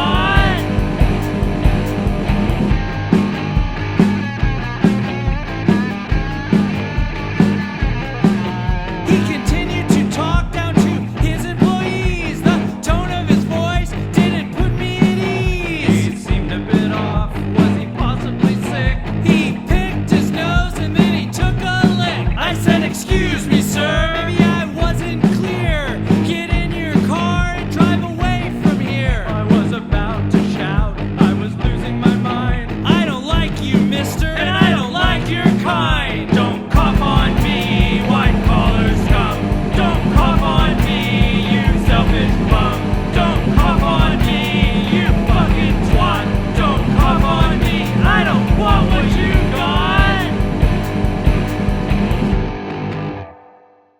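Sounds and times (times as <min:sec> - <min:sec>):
drum beat: 0:00.0 - 0:52.6
rock band playing: 0:00.0 - 0:53.5
bass and guitar: 0:00.0 - 0:53.6
bending lead melody: 0:36.6 - 0:53.4.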